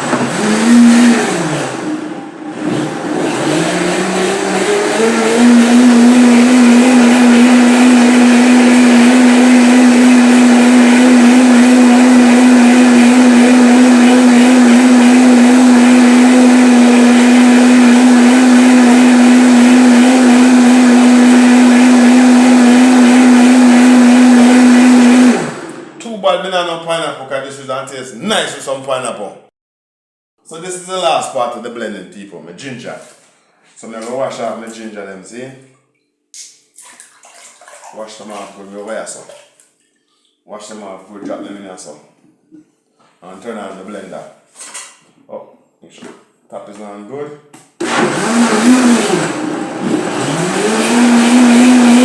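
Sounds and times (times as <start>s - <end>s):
electric blender motor: 0.0s - 26.0s, 47.8s - 52.0s.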